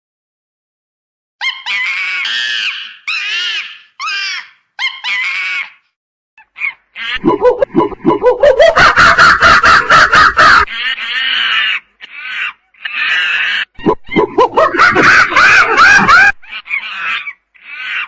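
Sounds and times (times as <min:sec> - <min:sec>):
monkey calling: 0:06.4 - 0:18.0.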